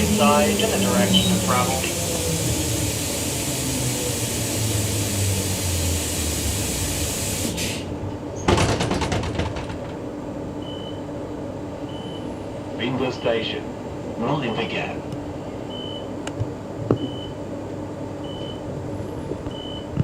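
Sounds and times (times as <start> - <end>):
train running noise with hiss: 0.0 - 8.0
sliding doors rattling open: 7.0 - 10.1.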